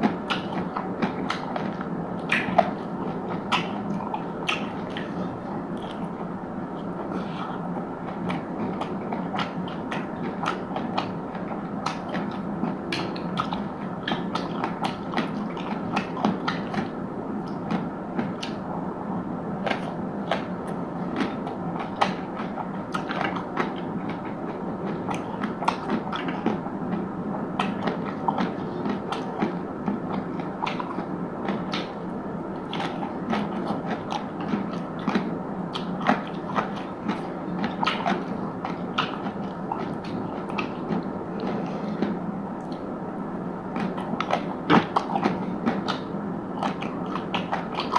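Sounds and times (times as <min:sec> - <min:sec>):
person chewing crunchy food: 0:00.0 - 0:18.6, 0:27.6 - 0:32.0, 0:32.6 - 0:42.9, 0:43.7 - 0:47.9.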